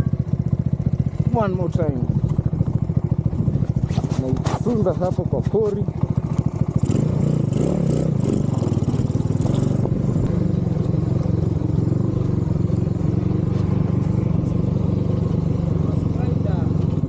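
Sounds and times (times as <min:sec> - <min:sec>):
motorcycle engine running: 0:00.0 - 0:17.0
scraping rustle: 0:03.6 - 0:05.3.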